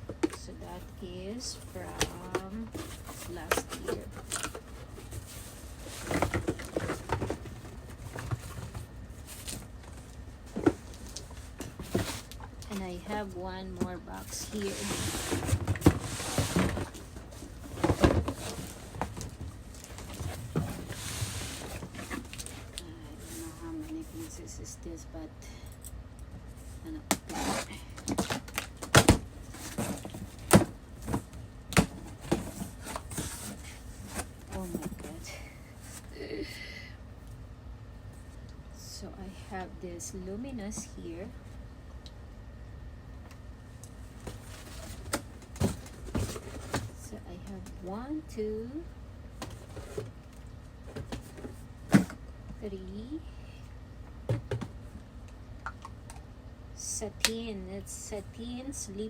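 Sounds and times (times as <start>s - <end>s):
boxes and bottles being handled: 0.0s - 24.8s, 25.8s - 36.4s, 43.8s - 53.1s.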